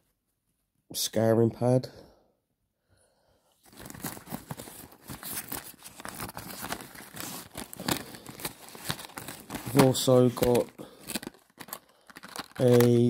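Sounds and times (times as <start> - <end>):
fabric bag rustling and crinkling: 3.6 - 13.0.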